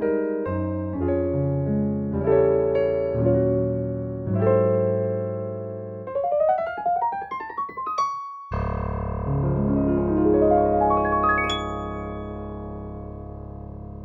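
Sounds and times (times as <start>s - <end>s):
quick upward piano run: 0.0s - 14.0s
digital piano gospel chords: 9.3s - 14.0s.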